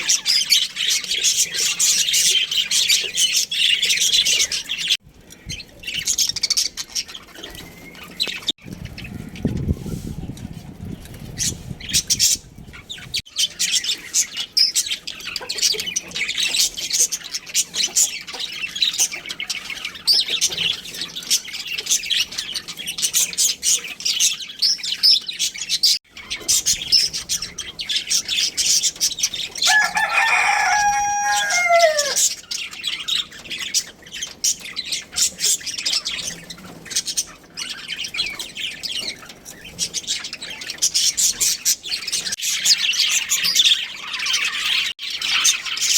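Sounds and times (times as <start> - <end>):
budgerigars chirping: 0.0 - 5.0, 11.3 - 45.9
rooster crowing: 29.6 - 32.3.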